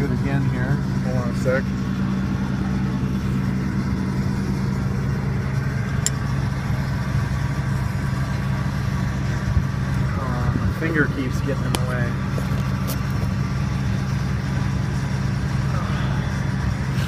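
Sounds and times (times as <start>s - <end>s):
diesel engine idling: 0.0s - 17.0s
sharp metallic click: 6.0s - 6.2s.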